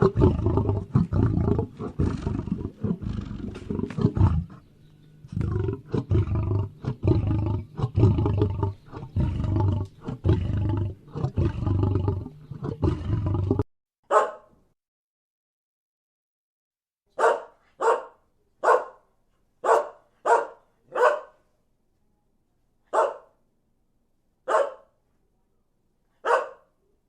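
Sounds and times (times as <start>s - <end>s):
big cat roaring: 0.0s - 4.6s, 5.3s - 13.6s.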